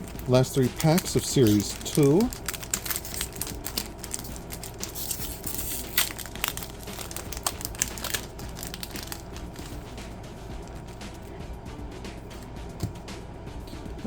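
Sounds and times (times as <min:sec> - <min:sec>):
card pack wrapper crinkling and tearing: 0:00.0 - 0:09.9.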